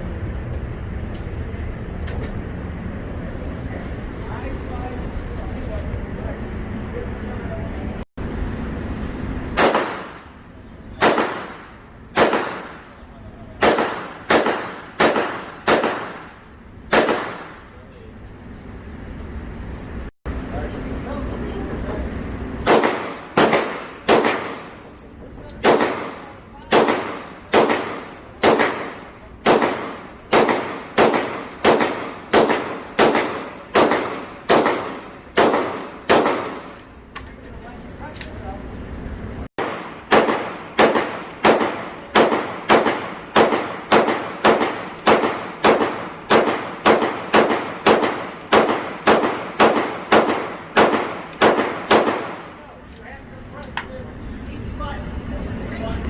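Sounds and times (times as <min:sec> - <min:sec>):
gunshots: 0:09.6 - 0:10.4, 0:11.0 - 0:13.0, 0:13.6 - 0:17.7, 0:22.6 - 0:24.8, 0:25.6 - 0:36.8, 0:39.6 - 0:52.5.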